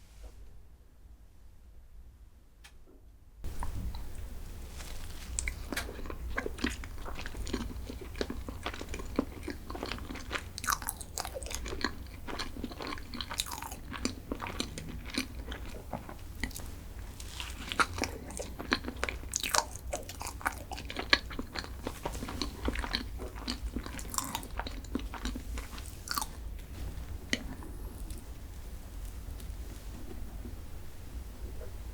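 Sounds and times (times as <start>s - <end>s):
crunchy chewing: 3.5s - 30.5s
low hum: 22.6s - 31.9s.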